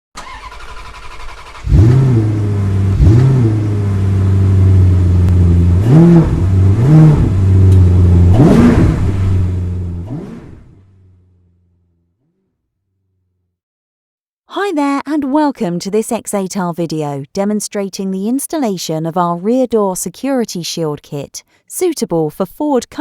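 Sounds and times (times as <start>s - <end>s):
engine idling and revving: 0.2s - 12.0s
vehicle engine starting: 0.2s - 12.4s.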